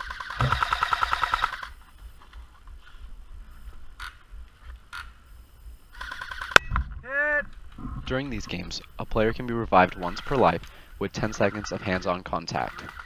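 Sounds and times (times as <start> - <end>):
airsoft machine gun firing: 0.0 - 1.8, 6.0 - 6.6, 11.2 - 13.0.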